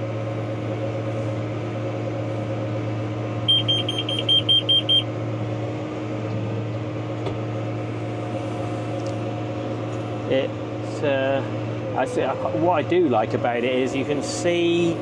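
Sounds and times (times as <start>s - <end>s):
tractor engine running: 0.0s - 15.0s
short high beeps: 3.5s - 5.1s.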